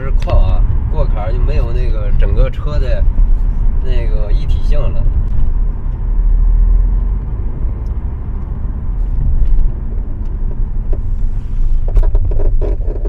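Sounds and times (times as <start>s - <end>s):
low road rumble inside car: 0.0s - 13.0s
suspension creaks and knocks: 5.0s - 13.0s.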